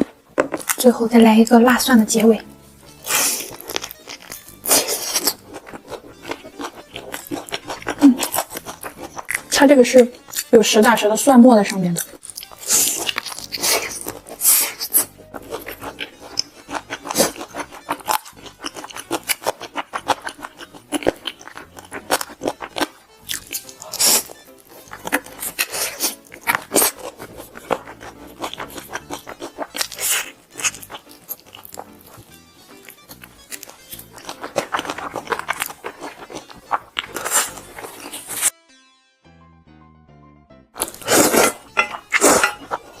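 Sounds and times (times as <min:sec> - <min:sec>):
fried chicken crunching: 0:02.9 - 0:11.0, 0:11.6 - 0:38.5, 0:40.8 - 0:43.0.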